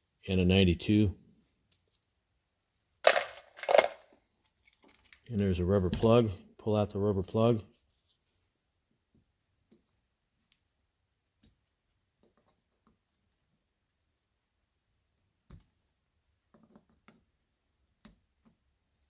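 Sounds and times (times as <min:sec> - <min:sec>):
small metal parts clicking: 0:03.1 - 0:04.0.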